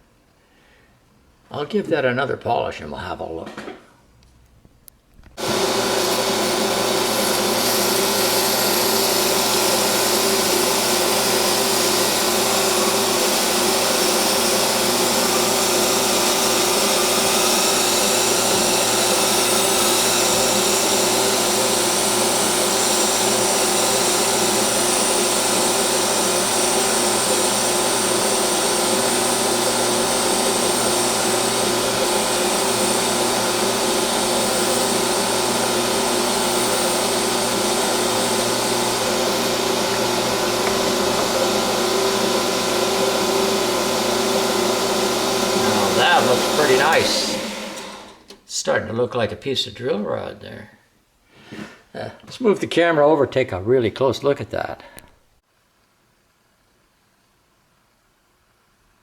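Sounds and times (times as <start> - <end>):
metal lathe motor hum: 5.4 - 48.2
sandpaper hissing on spinning steel: 45.6 - 47.4.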